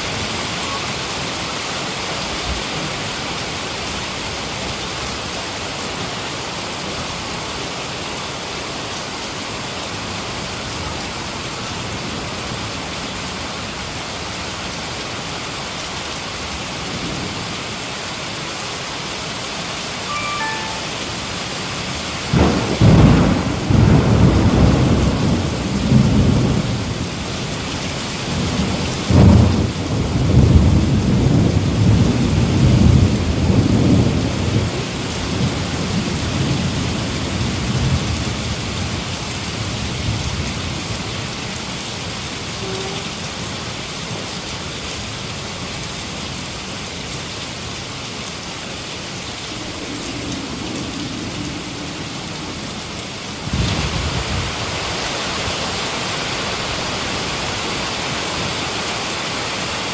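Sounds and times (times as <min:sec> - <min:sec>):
heavy rain falling: 0:00.0 - 0:59.9
thunder rumbling: 0:22.3 - 0:27.6, 0:28.2 - 0:38.4, 0:49.3 - 0:54.7.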